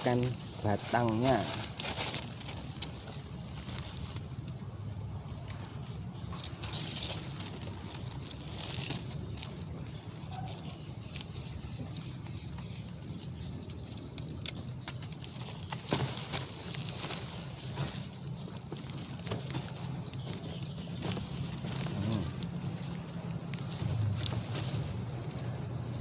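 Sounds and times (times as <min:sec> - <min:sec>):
rustling stems and leaves: 0:00.0 - 0:26.0.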